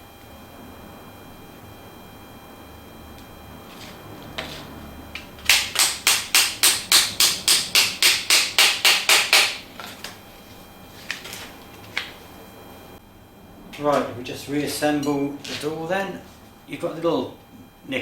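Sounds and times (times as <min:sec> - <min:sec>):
quick even tapping: 0:05.2 - 0:09.9.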